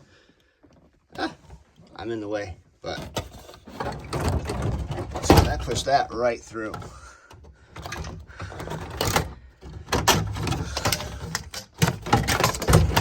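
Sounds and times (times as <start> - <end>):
car parts rattling and knocking: 2.8 - 13.0.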